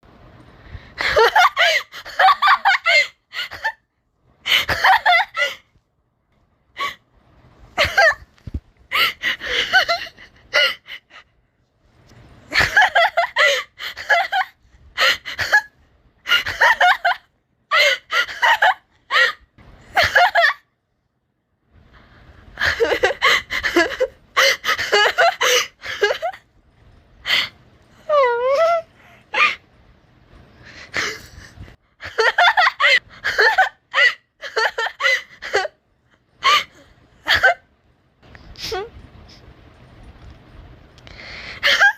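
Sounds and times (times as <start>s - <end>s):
person laughing hard: 7.8s - 8.3s, 22.6s - 26.4s, 32.0s - 35.7s.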